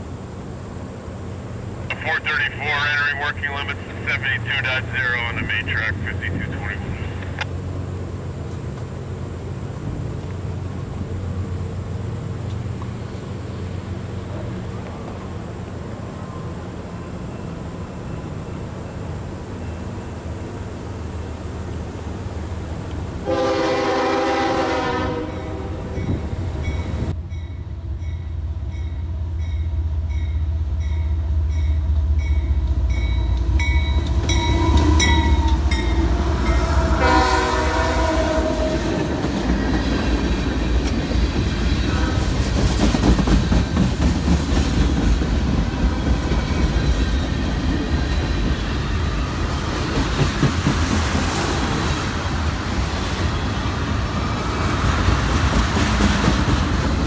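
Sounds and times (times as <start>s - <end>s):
locomotive air horn: 23.2s - 26.0s, 34.0s - 39.0s
locomotive bell ringing: 26.0s - 37.1s.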